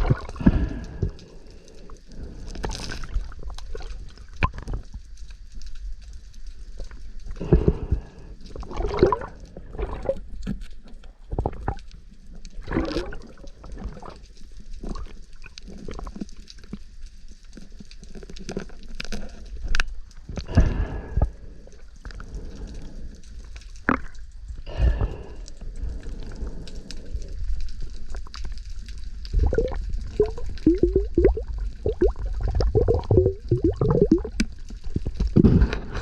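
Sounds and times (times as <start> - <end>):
water gurgling underwater: 0.0 - 1.1, 8.6 - 10.3, 12.5 - 14.2, 23.8 - 24.2, 29.2 - 35.8
steady low rumble: 0.0 - 2.4, 29.1 - 36.0.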